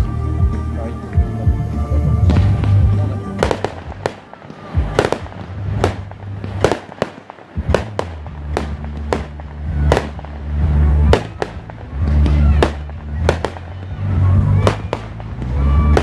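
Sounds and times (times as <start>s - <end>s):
firework shell bursts: 2.3s - 16.0s.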